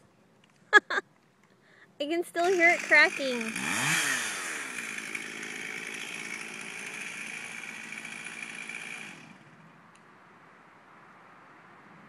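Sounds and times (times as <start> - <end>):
two-stroke chainsaw running: 2.3 - 9.6.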